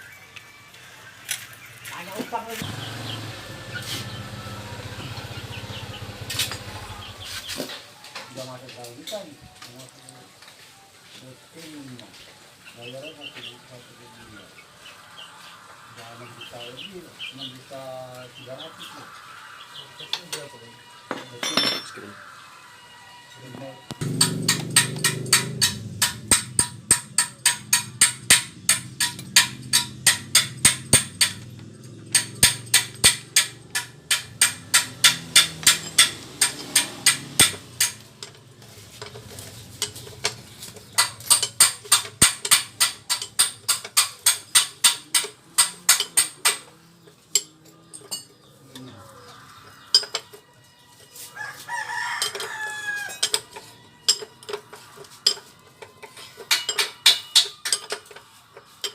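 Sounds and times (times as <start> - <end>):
sharp metallic clicks: 23.9 - 38.4, 39.8 - 46.6
rooster crowing: 51.2 - 53.8.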